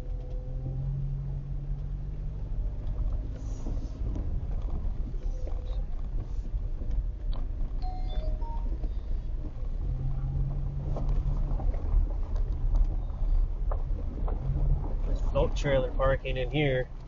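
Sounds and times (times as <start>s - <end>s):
vehicle engine and tyres rumbling: 0.0s - 17.0s
low hum: 7.6s - 15.4s.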